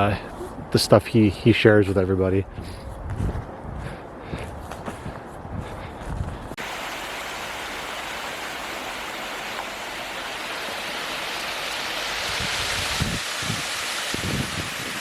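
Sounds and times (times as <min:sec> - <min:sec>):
footsteps on trail: 0:02.5 - 0:06.6
stream water rushing: 0:06.6 - 0:15.0.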